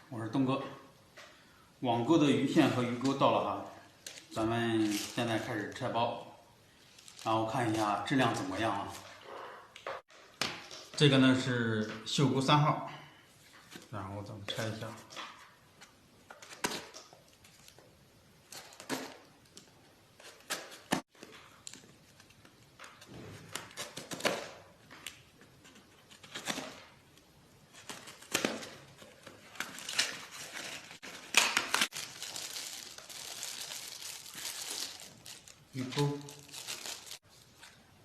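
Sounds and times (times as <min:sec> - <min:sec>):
packaging rustling and crinkling: 0:04.0 - 0:05.9, 0:06.8 - 0:09.2, 0:27.7 - 0:37.9.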